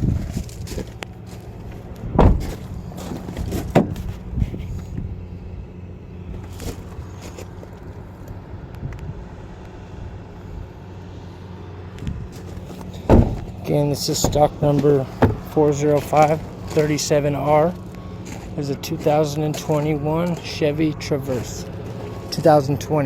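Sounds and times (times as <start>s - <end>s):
low hum: 0.0s - 23.0s
sharp thumps and knocks: 12.7s - 13.6s, 14.2s - 15.6s.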